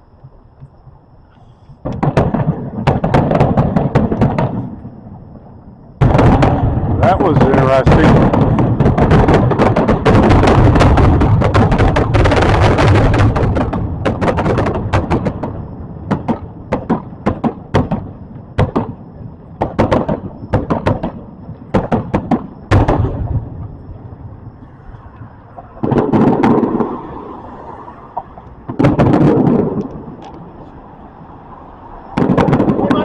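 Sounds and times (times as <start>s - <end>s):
firecrackers popping: 1.4s - 31.2s, 31.9s - 33.0s
firecracker bangs: 1.8s - 5.3s, 6.0s - 19.0s, 19.6s - 23.8s, 25.8s - 27.2s, 28.6s - 30.2s, 32.1s - 33.0s.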